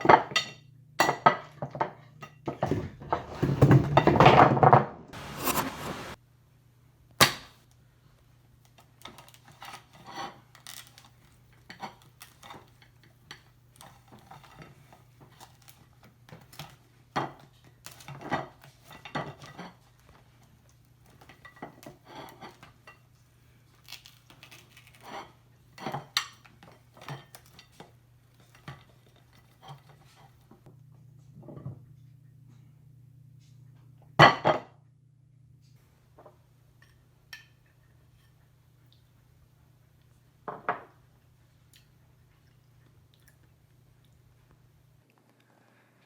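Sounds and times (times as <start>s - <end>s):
faint low hum: 27.4s - 46.0s.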